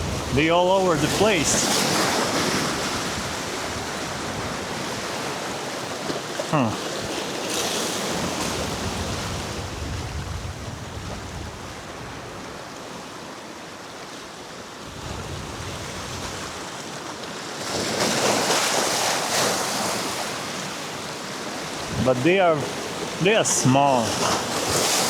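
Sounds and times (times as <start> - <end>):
wind on microphone: 0.0 - 5.0, 8.1 - 12.4, 14.9 - 16.6, 21.8 - 22.2
sea waves washing against rocks: 0.0 - 25.0.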